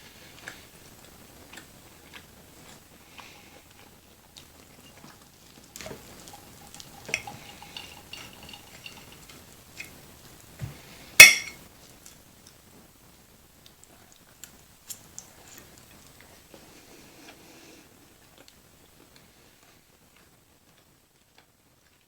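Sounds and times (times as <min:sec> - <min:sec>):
tableware clinking: 0:03.0 - 0:10.0, 0:11.2 - 0:11.6.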